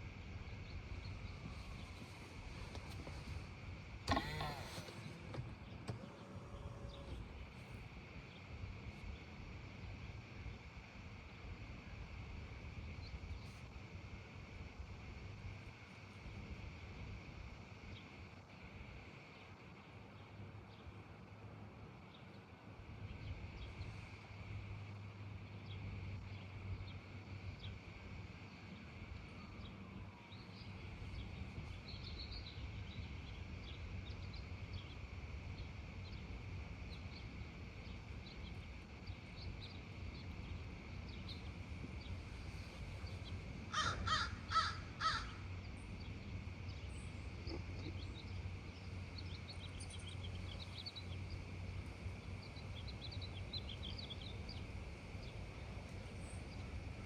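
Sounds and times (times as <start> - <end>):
steady background hum: 0.0 - 57.0
loud bird calls: 4.1 - 7.2, 43.0 - 46.2
small birds chirping: 30.3 - 57.0.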